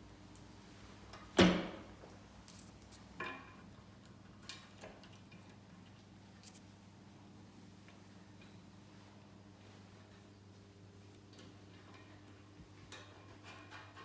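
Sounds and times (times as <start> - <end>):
metal parts clicking and knocking: 0.3 - 0.6.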